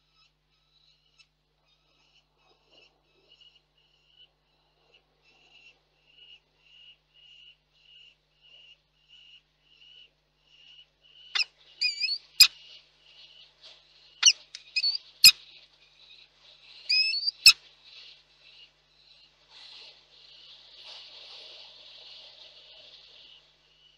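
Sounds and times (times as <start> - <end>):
falcon wavering calls: 11.4 - 12.5, 14.2 - 15.4, 16.9 - 17.6.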